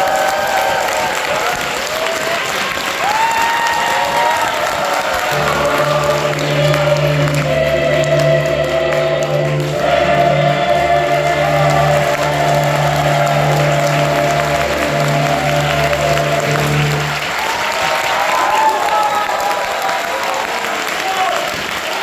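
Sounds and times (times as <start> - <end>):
mixed choir singing held chords: 4.6 - 17.5.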